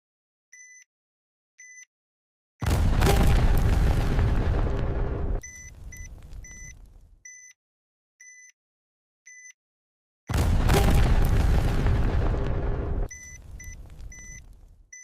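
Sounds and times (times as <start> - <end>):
explosion boom: 2.6 - 7.1, 10.3 - 14.8
electronic bomb-timer beeps: 5.4 - 7.5, 13.0 - 15.0.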